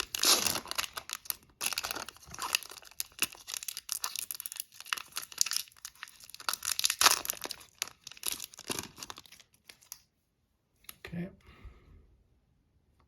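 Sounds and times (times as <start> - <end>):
wrapper crinkling and tearing: 0.0 - 10.0.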